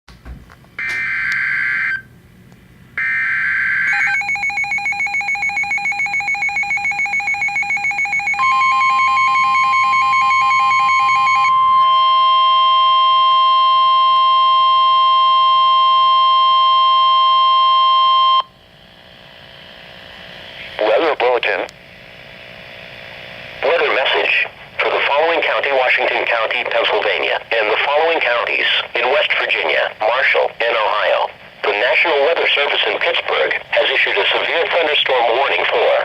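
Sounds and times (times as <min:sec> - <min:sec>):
steady warning alarm tone: 0:00.8 - 0:02.1, 0:03.0 - 0:18.6
screechy digital header tones: 0:03.0 - 0:18.4
radio hiss: 0:20.2 - 0:36.0.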